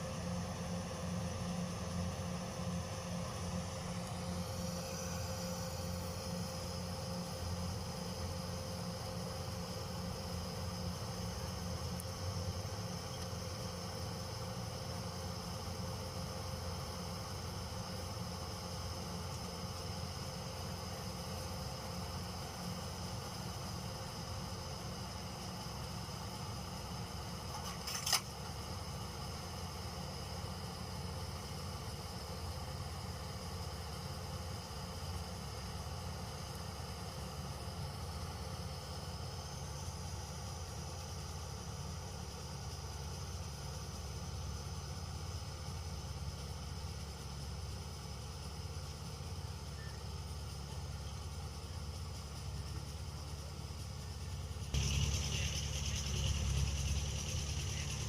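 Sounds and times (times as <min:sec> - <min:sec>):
diesel engine running steadily: 0:00.0 - 0:58.0
diesel engine running: 0:54.6 - 0:58.0.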